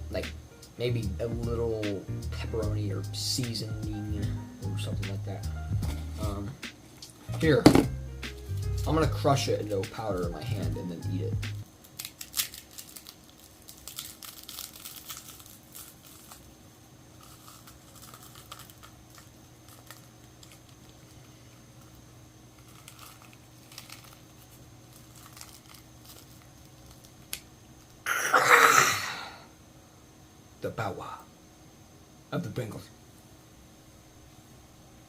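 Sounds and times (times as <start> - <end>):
crisps crackling in a hand: 11.8 - 16.5, 17.1 - 28.0.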